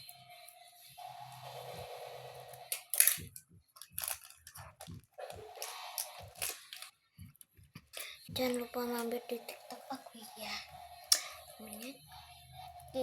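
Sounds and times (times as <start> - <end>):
handling rustles and clicks: 2.7 - 9.8.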